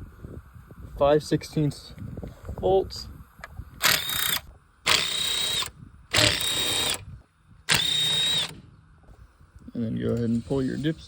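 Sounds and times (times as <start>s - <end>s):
impact tool motor whine: 3.8s - 7.1s, 7.7s - 8.6s.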